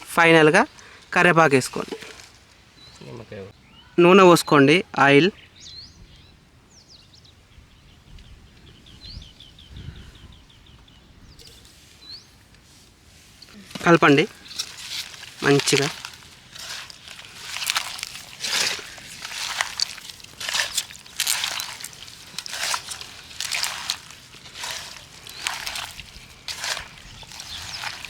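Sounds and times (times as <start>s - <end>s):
birds chirping: 0.0s - 12.6s, 13.2s - 28.0s
hands mixing raw chicken: 13.6s - 28.0s.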